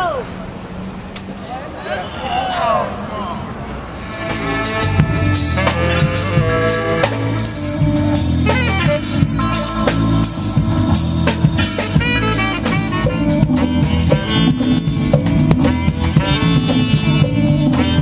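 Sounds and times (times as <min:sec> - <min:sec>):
upbeat jazz music: 0:04.0 - 0:18.0.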